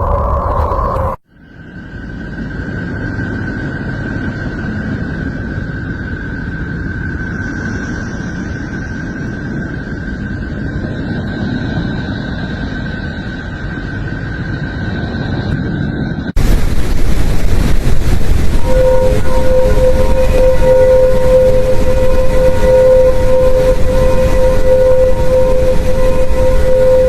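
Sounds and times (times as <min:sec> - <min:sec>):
steady dense rumble: 0:00.0 - 0:27.0
high whistling tone: 0:18.1 - 0:27.0.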